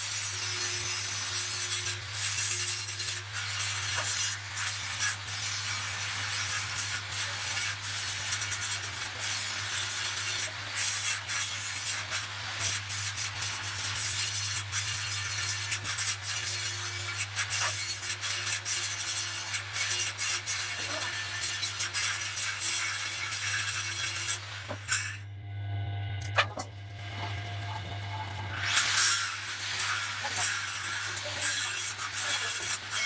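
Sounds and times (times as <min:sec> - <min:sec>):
hissing crackle of metalworking: 0:00.0 - 0:25.2, 0:26.2 - 0:33.0
low electrical hum: 0:25.1 - 0:28.8.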